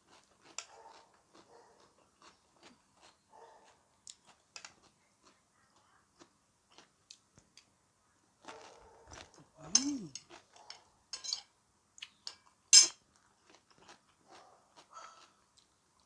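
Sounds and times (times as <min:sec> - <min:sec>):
person chewing and crunching food: 0:00.0 - 0:07.7, 0:08.4 - 0:10.8, 0:12.0 - 0:16.0
person humming: 0:09.6 - 0:10.2
utensils and dishes clicking: 0:12.3 - 0:13.0.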